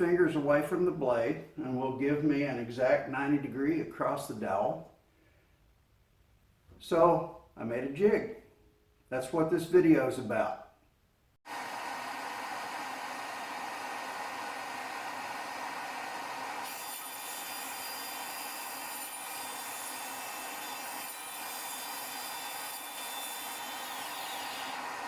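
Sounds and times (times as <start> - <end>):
band saw whirring: 11.5 - 25.0.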